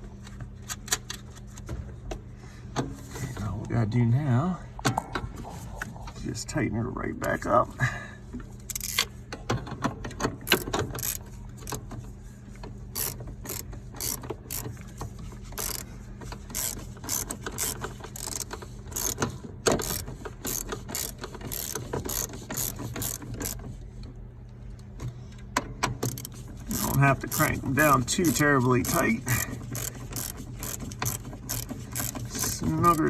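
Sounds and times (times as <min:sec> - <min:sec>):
ratchet wrench clicking: 0:08.7 - 0:09.1, 0:10.5 - 0:11.8, 0:13.0 - 0:14.8, 0:15.6 - 0:15.9, 0:16.5 - 0:23.6, 0:26.0 - 0:33.0.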